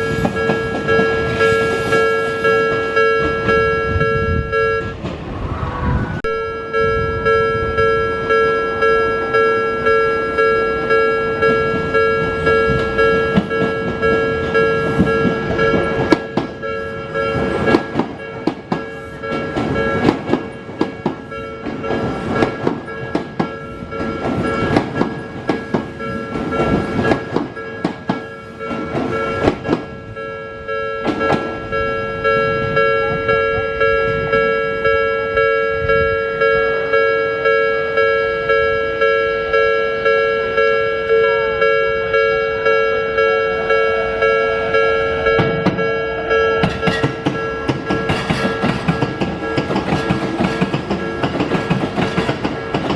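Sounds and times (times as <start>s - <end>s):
train wheels clacking over rail joints: 0.0s - 3.6s, 11.4s - 30.1s, 31.0s - 31.6s, 46.6s - 52.9s
level-crossing bell dinging: 0.0s - 5.0s, 6.2s - 52.9s.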